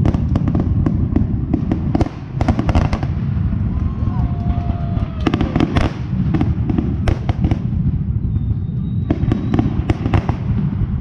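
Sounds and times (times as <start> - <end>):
fireworks booming: 0.0 - 11.0
fireworks cracks and crackling: 0.0 - 11.0.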